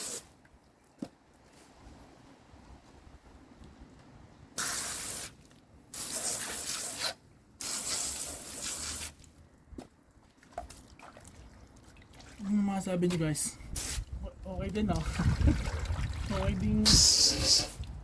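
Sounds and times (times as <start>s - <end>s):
water spraying: 4.6s - 5.4s, 6.0s - 9.2s, 14.7s - 17.9s.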